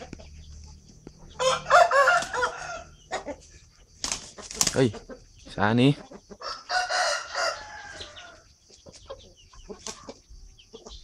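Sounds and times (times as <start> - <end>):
chicken clucking and chirping: 0.0 - 11.0
rooster crowing: 1.3 - 3.4, 6.4 - 8.5.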